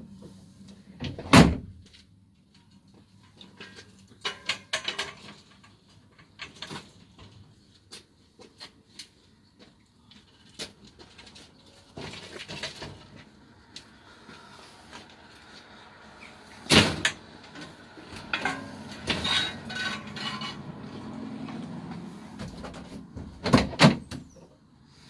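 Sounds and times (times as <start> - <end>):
clatter: 18.3 - 20.6.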